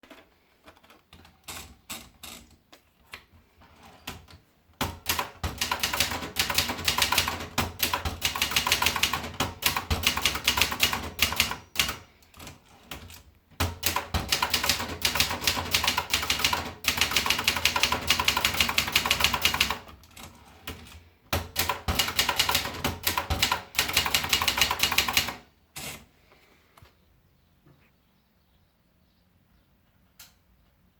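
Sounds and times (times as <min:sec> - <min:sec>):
typewriter typing: 0:04.1 - 0:25.5.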